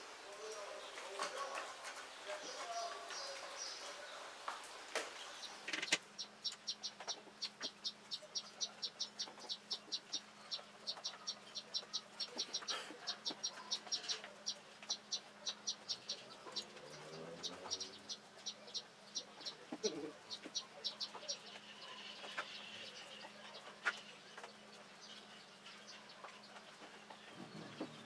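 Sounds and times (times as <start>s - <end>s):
sharp clicks: 5.7s - 6.0s.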